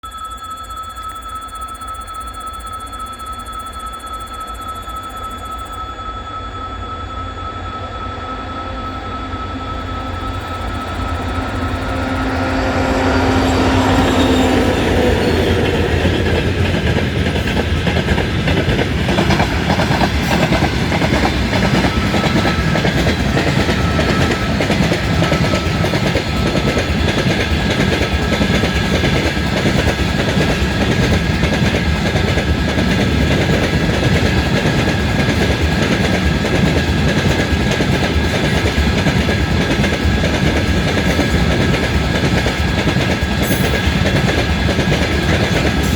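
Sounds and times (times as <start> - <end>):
steady high whistle: 0.0 - 26.9
diesel locomotive passing: 7.0 - 45.9
train wheel clatter: 10.2 - 45.9.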